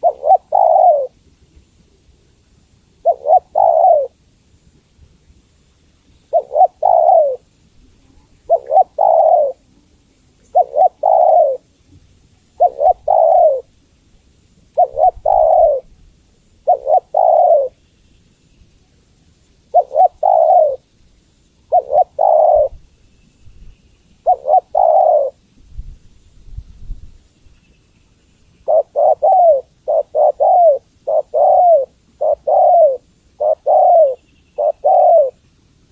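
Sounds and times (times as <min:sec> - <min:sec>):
dove cooing: 0:00.0 - 0:01.2, 0:03.0 - 0:04.2, 0:06.3 - 0:07.5, 0:08.4 - 0:09.7, 0:10.5 - 0:11.7, 0:12.6 - 0:13.7, 0:14.8 - 0:15.9, 0:16.6 - 0:17.8, 0:19.7 - 0:20.9, 0:21.7 - 0:22.9, 0:24.2 - 0:25.4, 0:28.6 - 0:35.4.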